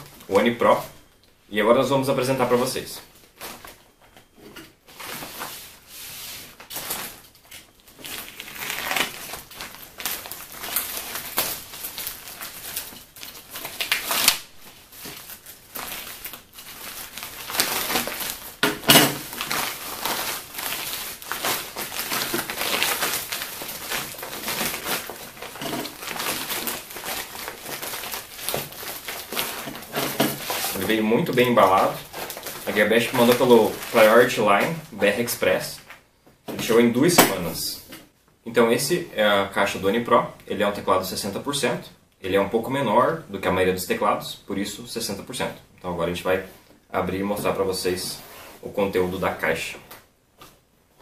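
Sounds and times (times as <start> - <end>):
packaging crinkling and rustling: 2.2 - 37.9.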